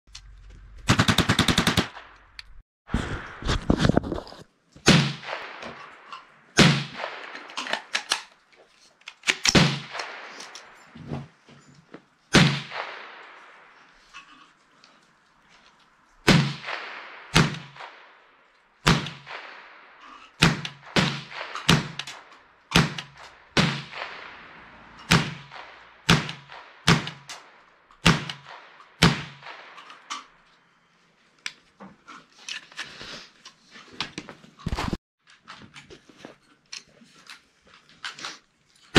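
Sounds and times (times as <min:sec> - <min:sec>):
rifle shots with ringing echo: 0:00.9 - 0:02.2, 0:04.9 - 0:08.1, 0:09.4 - 0:10.8, 0:12.3 - 0:14.0, 0:16.2 - 0:30.4.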